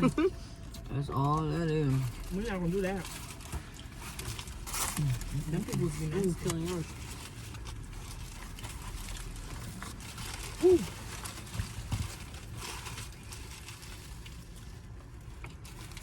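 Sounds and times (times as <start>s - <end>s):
people eating: 0.0s - 6.8s
person humming: 10.6s - 10.9s.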